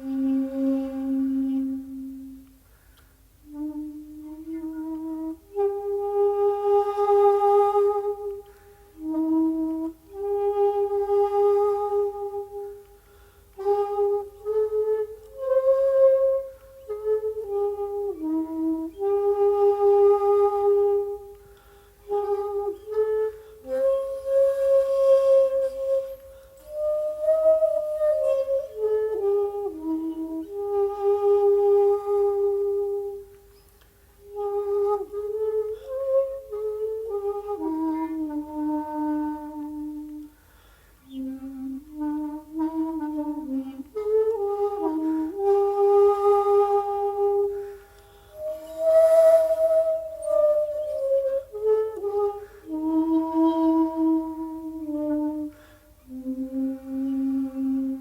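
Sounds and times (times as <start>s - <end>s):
bamboo flute playing: 0.0s - 58.0s.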